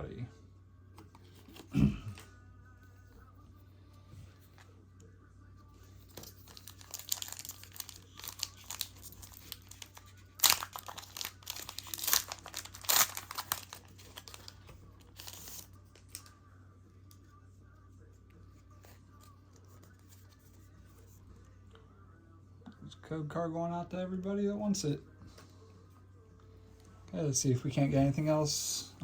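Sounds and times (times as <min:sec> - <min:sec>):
foil wrapper crinkling and tearing: 0:06.1 - 0:16.4.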